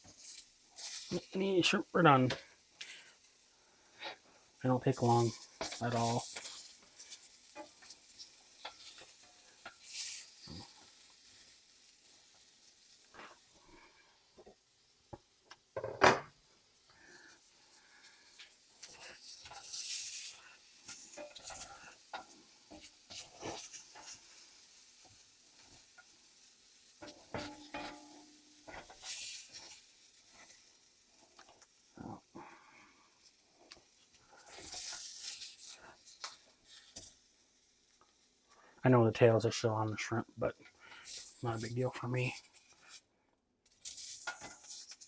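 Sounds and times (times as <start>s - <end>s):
spatula scraping frying pan: 0.0s - 1.4s, 2.3s - 4.2s, 5.0s - 13.9s, 17.0s - 31.3s, 33.2s - 37.2s, 40.7s - 43.1s, 43.7s - 45.0s
sizzling: 0.0s - 45.0s.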